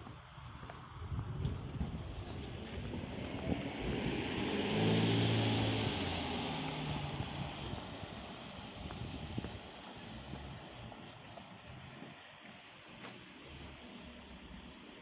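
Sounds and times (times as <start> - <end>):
vehicle passing by: 1.9 - 10.6.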